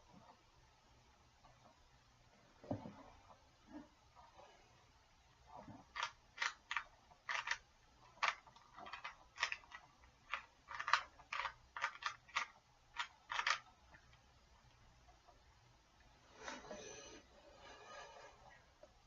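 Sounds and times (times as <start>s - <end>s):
puzzle cube clicks: 5.9s - 13.6s.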